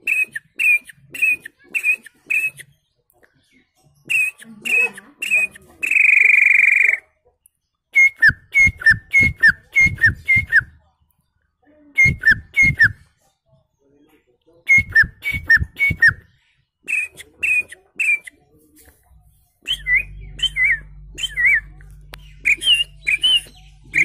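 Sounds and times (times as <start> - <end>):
man whistling bird call: 0.0 - 2.6, 4.1 - 7.0, 8.0 - 10.7, 12.0 - 13.0, 14.7 - 16.2, 16.9 - 18.3, 19.7 - 21.6, 22.4 - 24.0.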